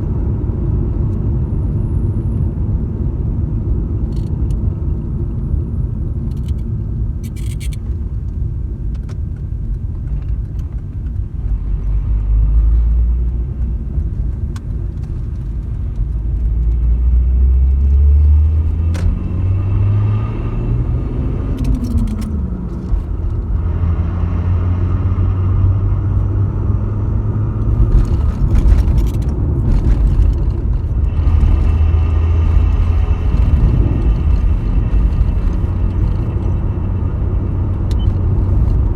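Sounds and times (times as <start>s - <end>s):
car engine accelerating: 15.1s - 38.9s.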